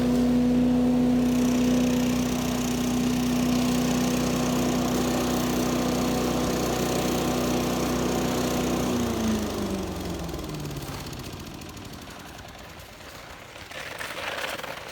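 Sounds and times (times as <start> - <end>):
motor winding down: 0.0 - 12.6.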